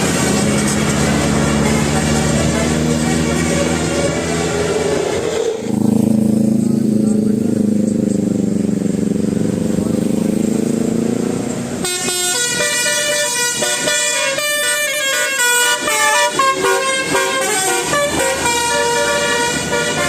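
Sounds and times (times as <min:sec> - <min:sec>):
multi-tone bus horn playing a tune: 0:00.0 - 0:05.4, 0:11.7 - 0:20.0.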